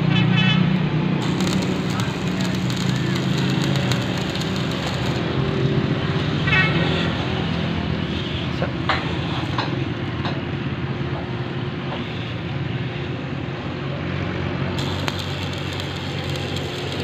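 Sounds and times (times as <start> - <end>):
sharp clicks: 1.2 - 5.3, 14.8 - 17.0
welding crackling hiss: 1.2 - 5.6, 14.8 - 17.0
welding machine hum: 1.2 - 6.3, 14.8 - 17.0.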